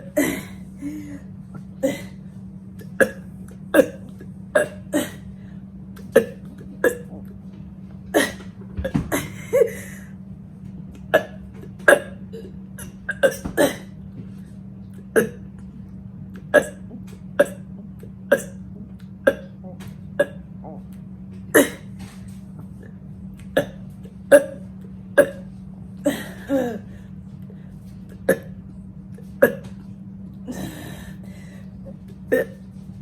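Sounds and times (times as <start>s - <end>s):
woman burping: 0.0s - 1.2s, 1.8s - 2.2s, 2.8s - 5.3s, 6.0s - 7.3s, 8.1s - 10.1s, 11.1s - 14.0s, 15.0s - 15.6s, 16.4s - 20.9s, 21.6s - 21.9s, 23.6s - 26.9s, 28.2s - 28.6s, 29.4s - 29.7s, 32.3s - 32.6s
steady low hum: 0.0s - 33.0s.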